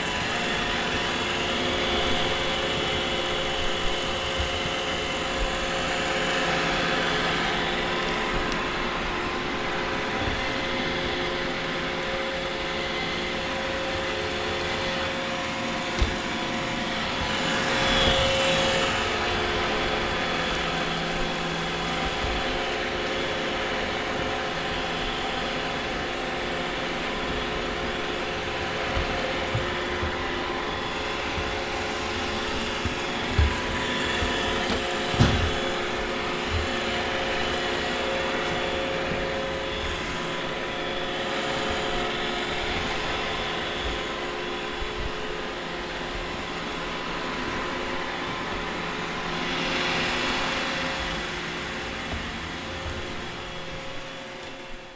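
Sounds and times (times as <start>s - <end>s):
robot vacuum whirring: 0.0s - 44.2s
light knocks of vacuum bumping: 27.1s - 40.1s.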